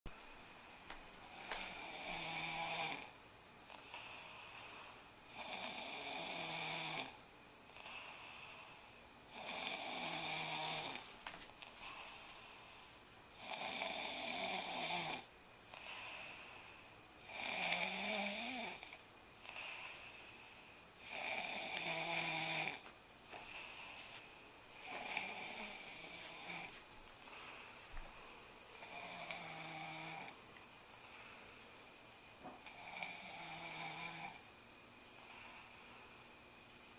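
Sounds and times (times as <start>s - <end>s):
person snoring: 1.2s - 11.1s, 11.7s - 24.2s, 24.8s - 27.8s, 28.7s - 30.4s, 32.6s - 34.5s.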